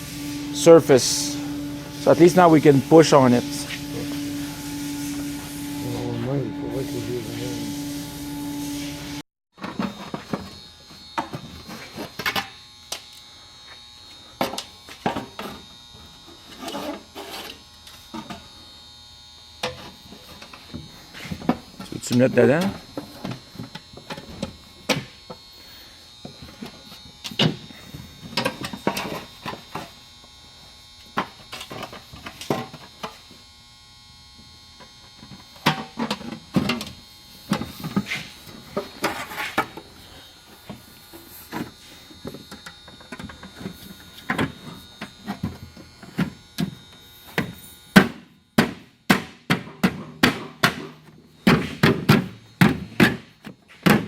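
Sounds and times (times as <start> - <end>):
steady electrical hum: 0.0 - 9.2, 9.8 - 54.0
knocks and clicks of wood and tools: 41.5 - 54.0.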